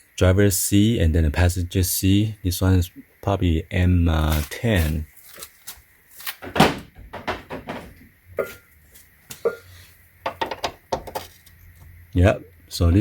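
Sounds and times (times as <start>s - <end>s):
metal tools knocking and clicking: 10.2s - 11.4s.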